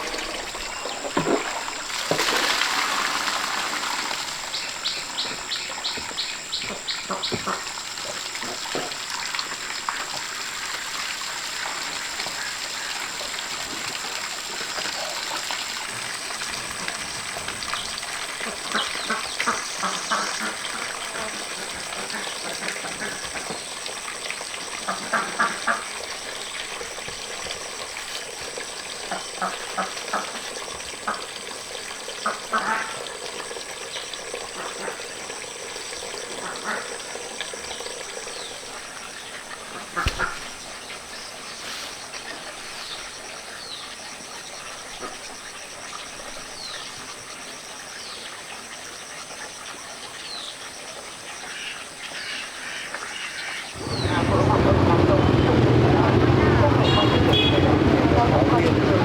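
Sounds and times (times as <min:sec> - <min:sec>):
ducks quacking: 0:04.8 - 0:08.9, 0:18.4 - 0:23.6, 0:24.8 - 0:26.0, 0:29.1 - 0:30.4, 0:32.2 - 0:33.0, 0:36.4 - 0:37.0, 0:39.6 - 0:40.6.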